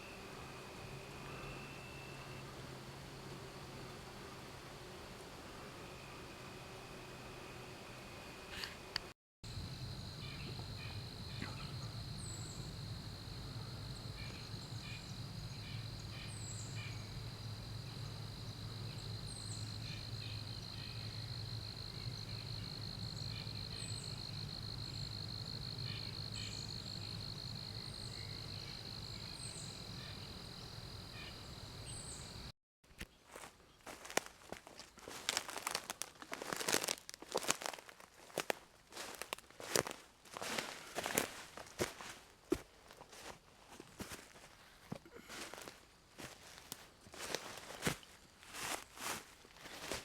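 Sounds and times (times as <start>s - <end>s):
insects trilling: 0.0s - 32.5s, 33.3s - 43.3s, 44.0s - 50.0s
low steady hum: 0.0s - 32.5s.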